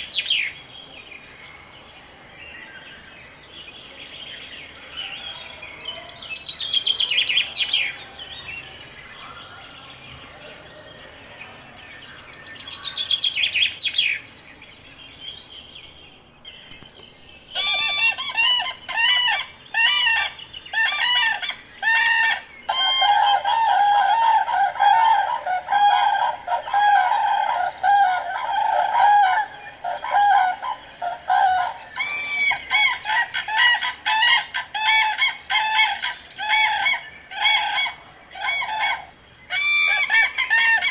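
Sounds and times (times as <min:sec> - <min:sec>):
birds calling rapidly: 0:04.3 - 0:40.9
descending whistled bird phrases: 0:17.5 - 0:35.2.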